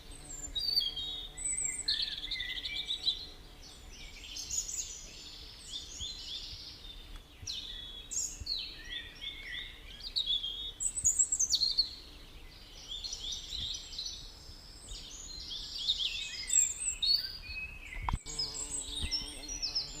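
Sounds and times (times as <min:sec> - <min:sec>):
songbirds singing and chirping: 0:00.0 - 0:20.0.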